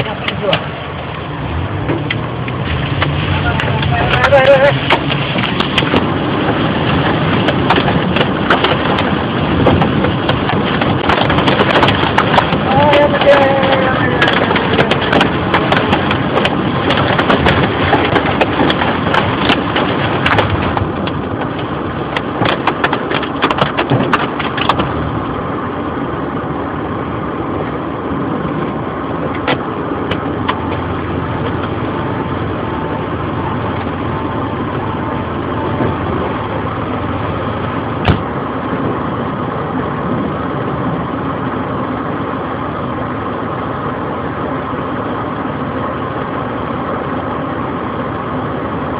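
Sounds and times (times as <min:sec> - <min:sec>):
hailstones clattering: 0:02.8 - 0:24.9.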